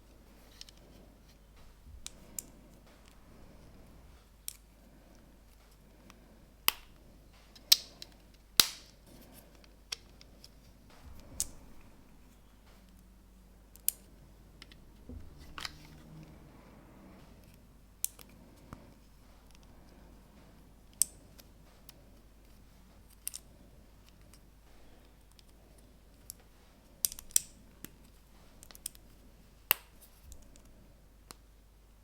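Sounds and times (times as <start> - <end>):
plastic pieces clicking together: 6.7 - 10.3, 27.0 - 28.0.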